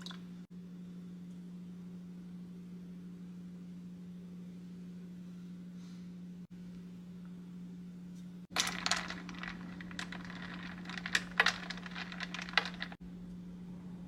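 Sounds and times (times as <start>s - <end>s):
utensils clicking and scraping: 8.5s - 13.0s.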